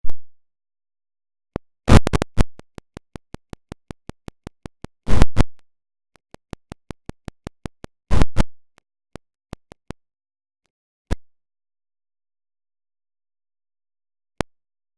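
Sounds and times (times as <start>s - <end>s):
short chopped clicks: 1.6s - 5.6s, 6.2s - 10.1s.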